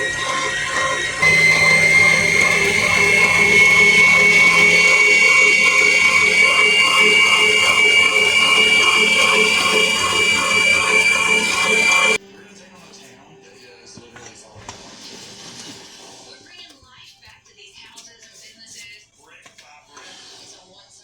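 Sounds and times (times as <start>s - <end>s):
electric mixer motor whining: 0.0s - 12.2s.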